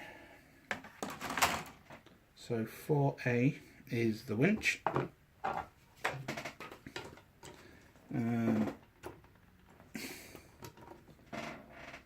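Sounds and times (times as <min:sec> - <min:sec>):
plastic parts clicking and tapping: 0:04.8 - 0:07.7, 0:08.6 - 0:11.2.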